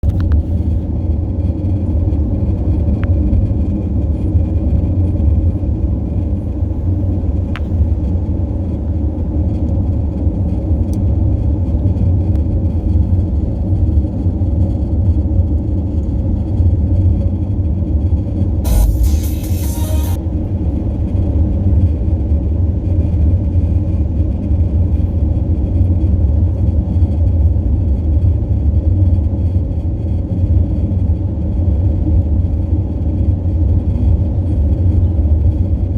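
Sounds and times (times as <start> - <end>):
deep rumble: 0.0 - 25.7
low buzzing drone: 18.5 - 24.1.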